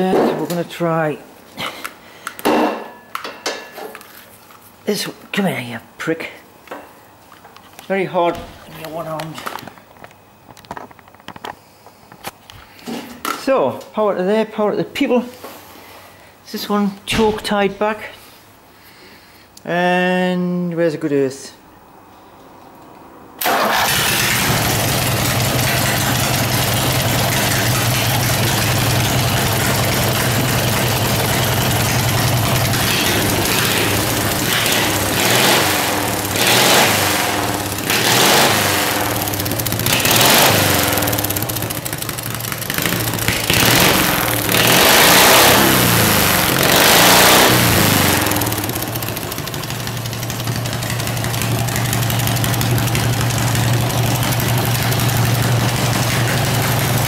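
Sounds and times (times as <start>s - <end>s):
lawnmower engine idling and revving: 23.4s - 57.0s.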